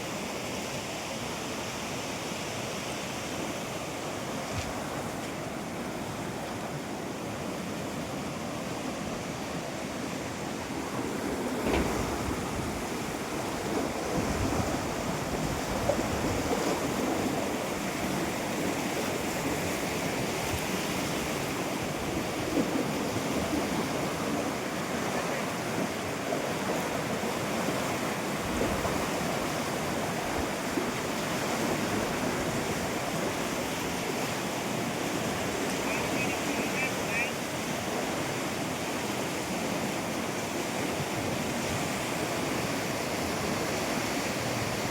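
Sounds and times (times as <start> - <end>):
wind buffeting microphone: 10.7 - 25.8
waterfall rushing: 34.8 - 37.7.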